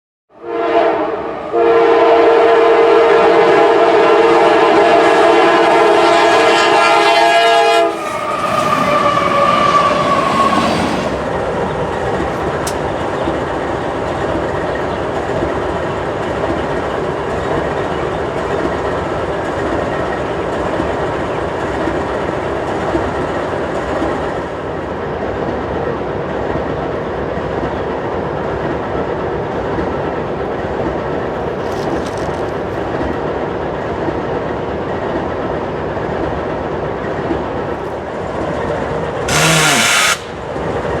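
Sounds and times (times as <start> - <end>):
train horn: 0.3 - 11.2, 39.3 - 40.4
freight cars rumbling: 4.8 - 15.2
wheels clattering on rail joints: 5.7 - 23.2, 30.8 - 33.4.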